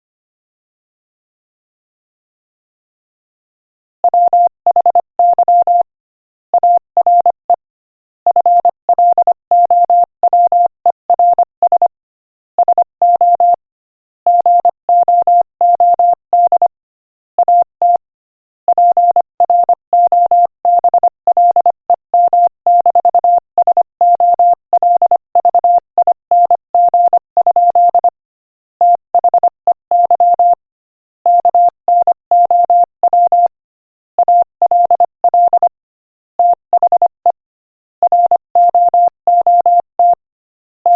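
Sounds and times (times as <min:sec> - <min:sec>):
morse code beeps: 0:04.1 - 0:05.9, 0:06.6 - 0:07.4, 0:08.3 - 0:11.9, 0:12.6 - 0:13.6, 0:14.3 - 0:16.7, 0:17.4 - 0:18.0, 0:18.7 - 0:28.2, 0:28.8 - 0:30.6, 0:31.3 - 0:33.5, 0:34.2 - 0:35.8, 0:36.4 - 0:37.4, 0:38.0 - 0:40.2.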